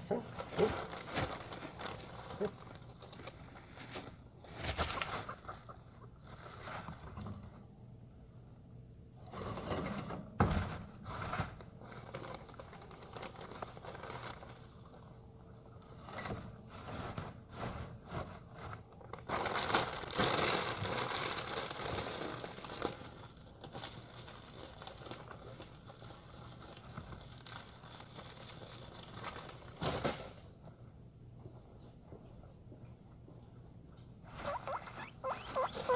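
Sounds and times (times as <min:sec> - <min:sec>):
rustling and crinkling bedding: 0:00.0 - 0:07.7, 0:09.2 - 0:30.8, 0:34.2 - 0:35.9.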